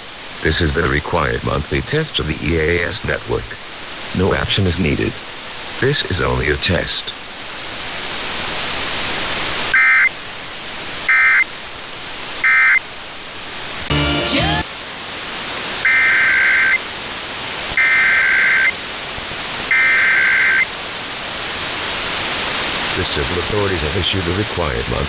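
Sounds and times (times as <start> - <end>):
radio hiss: 0.0 - 25.0
digital data bursts: 15.8 - 16.8, 17.8 - 18.8, 19.7 - 20.7.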